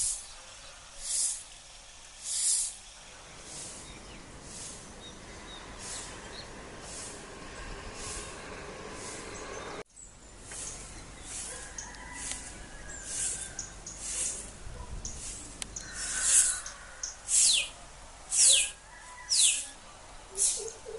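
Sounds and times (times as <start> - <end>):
birds chirping and whistling: 3.5 - 6.5, 12.9 - 14.4, 15.0 - 19.8
raspy high bird call: 15.8 - 19.8.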